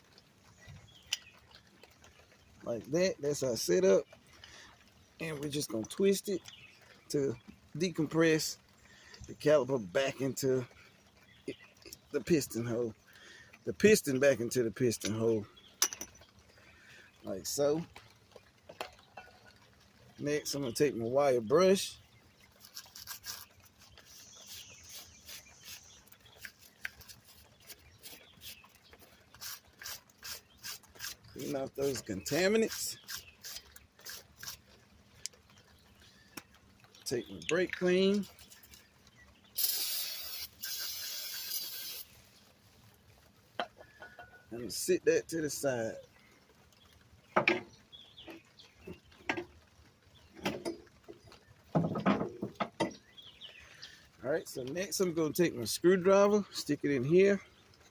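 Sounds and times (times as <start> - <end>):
wire brush scrubbing metal: 22.6 - 34.6.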